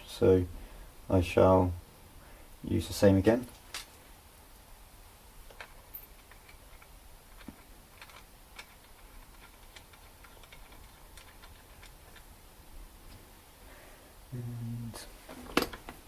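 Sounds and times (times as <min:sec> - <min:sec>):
small metal parts clicking: 0:05.5 - 0:12.3.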